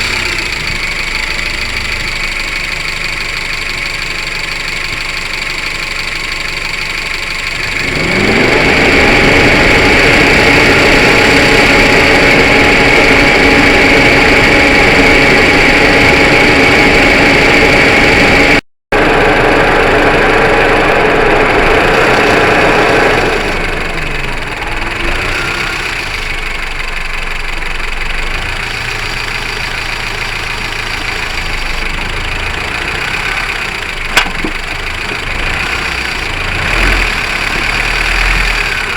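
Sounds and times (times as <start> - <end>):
car engine running: 0.0 - 38.9
sharp click: 34.1 - 34.6.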